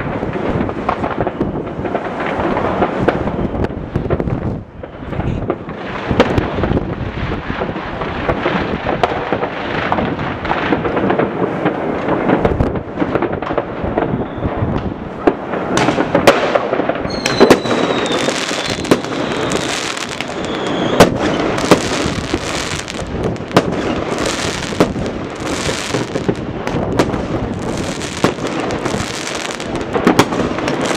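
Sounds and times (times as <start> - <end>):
fireworks bangs and crackling: 0.0 - 30.9
firework whistle sliding down: 17.1 - 22.9.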